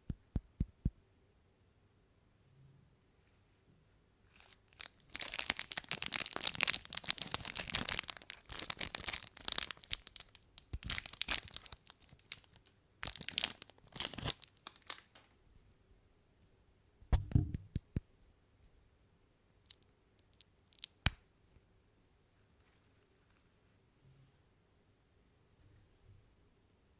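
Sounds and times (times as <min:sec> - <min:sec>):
candy wrapper tearing and crinkling: 0:04.4 - 0:15.1.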